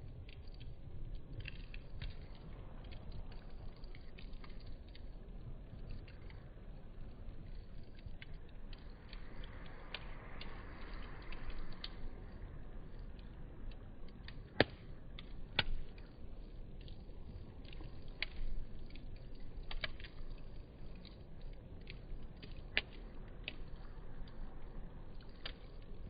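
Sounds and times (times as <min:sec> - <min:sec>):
campfire crackling and popping: 0:00.0 - 0:26.0
low hiss: 0:00.0 - 0:26.0.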